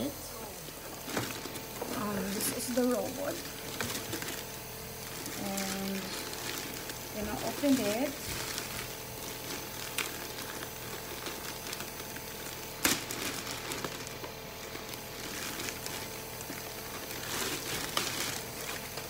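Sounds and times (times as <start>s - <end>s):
plastic packaging crinkling: 0.0s - 19.0s.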